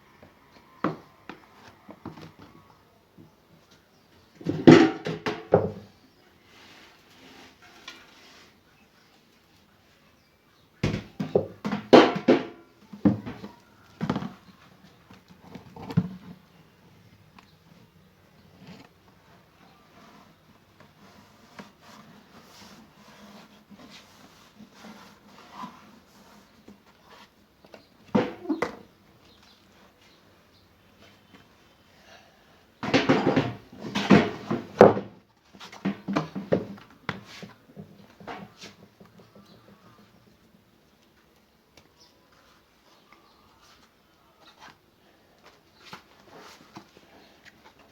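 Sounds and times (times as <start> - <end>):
knocks and scraping of machine parts: 32.8 - 40.2.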